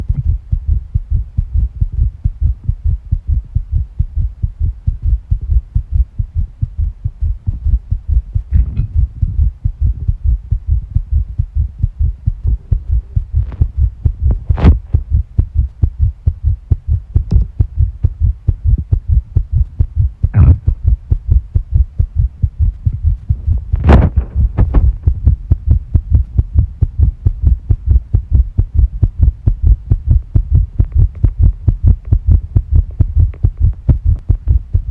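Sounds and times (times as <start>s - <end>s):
fast heartbeat thuds: 0.0s - 34.9s.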